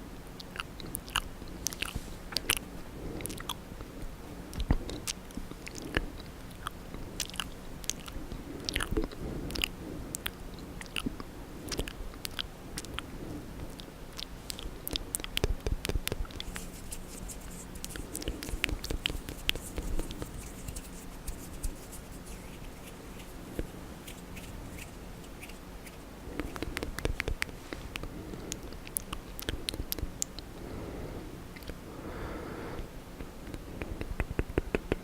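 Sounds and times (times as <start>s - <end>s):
lip smacks: 0.4s - 2.6s, 3.2s - 3.6s, 4.5s - 30.5s, 31.5s - 31.8s, 32.8s - 35.0s
tongue clicks: 0.4s - 2.6s, 4.5s - 13.0s, 13.7s - 17.0s, 22.5s - 30.5s, 31.6s - 31.8s.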